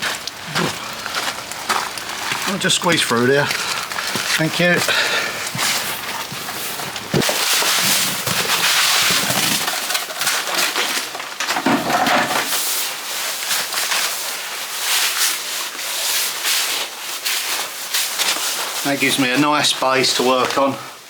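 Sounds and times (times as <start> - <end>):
sand shovelled over plastic: 5.6 - 11.2, 12.4 - 20.8.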